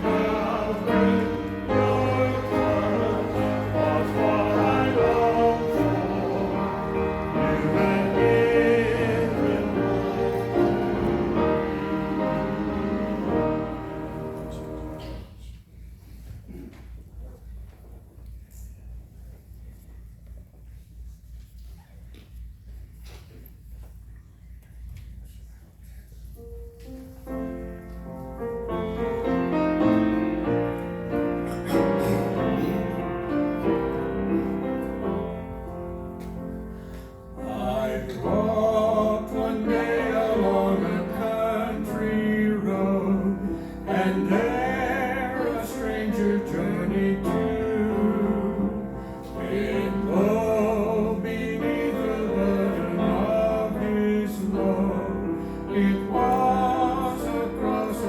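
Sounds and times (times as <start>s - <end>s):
piano playing slowly: 0.0s - 15.3s, 26.4s - 58.0s.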